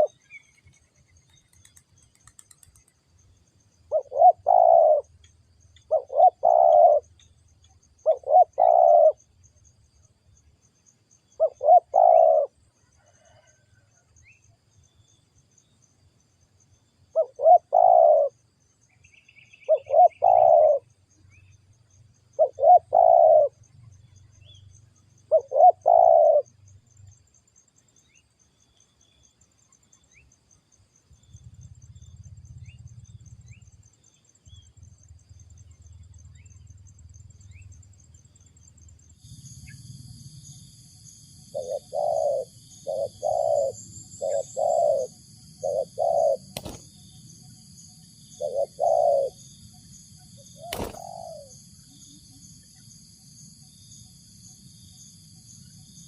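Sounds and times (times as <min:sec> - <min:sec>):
dove cooing: 0:00.0 - 0:00.2, 0:03.9 - 0:05.1, 0:05.9 - 0:07.2, 0:08.0 - 0:09.2, 0:11.4 - 0:13.6, 0:17.1 - 0:18.4, 0:19.7 - 0:20.9, 0:22.4 - 0:23.6, 0:25.3 - 0:26.5, 0:41.4 - 0:46.9, 0:48.3 - 0:49.4, 0:50.4 - 0:51.6.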